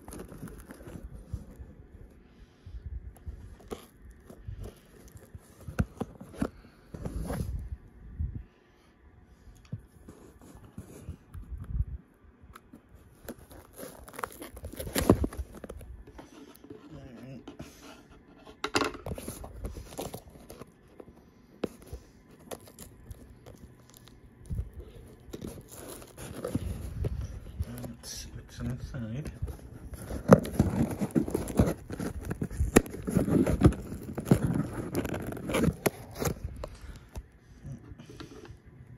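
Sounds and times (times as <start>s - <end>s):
cardboard box tearing and crinkling: 0.0s - 1.4s, 13.1s - 15.8s, 19.0s - 20.8s, 21.6s - 28.0s, 29.5s - 36.6s.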